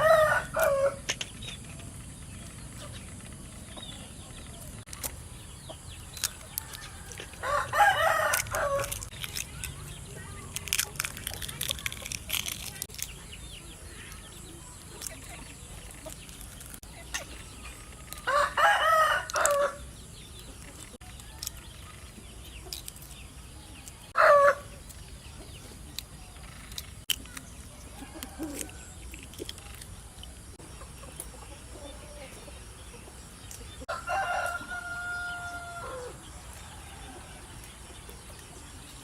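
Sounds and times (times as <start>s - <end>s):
rooster crowing: 0.0s - 1.0s, 6.7s - 9.1s, 18.2s - 19.8s, 24.2s - 24.7s, 33.9s - 37.4s.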